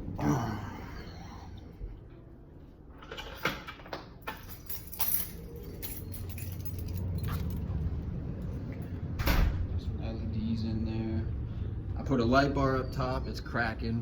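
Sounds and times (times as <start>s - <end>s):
keys jangling: 3.0s - 7.8s
low rumble: 5.5s - 12.8s.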